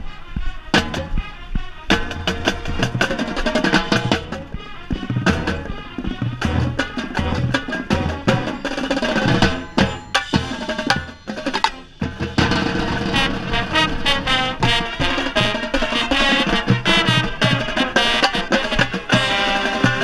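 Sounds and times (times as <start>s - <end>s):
marching band playing: 0.0s - 20.0s
sustained brass chords: 0.0s - 20.0s
tenor drums struck quickly: 0.0s - 20.0s.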